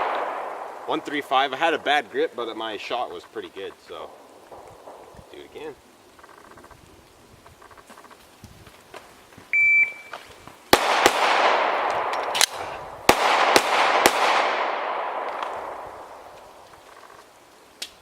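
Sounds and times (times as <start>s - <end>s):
shot timer beep: 9.6s - 10.1s
pistol shots: 10.7s - 16.2s.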